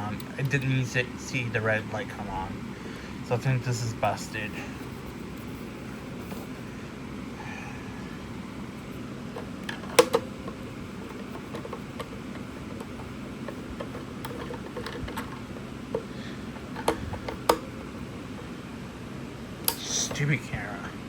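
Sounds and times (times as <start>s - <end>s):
low room noise: 0.0s - 21.0s
hands clicking and tapping: 9.6s - 18.5s.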